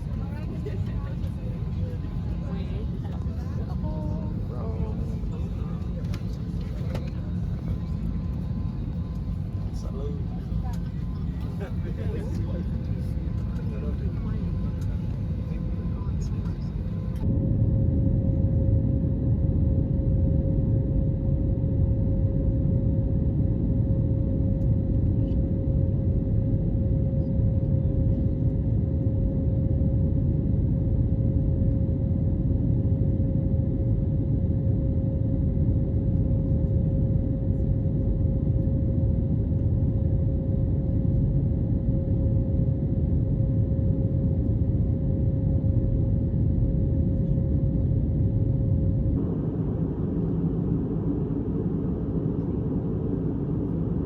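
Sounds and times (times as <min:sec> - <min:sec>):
airliner cabin roar: 0:00.0 - 0:17.4, 0:36.8 - 0:54.0
constant hum-like tone: 0:00.0 - 0:54.0.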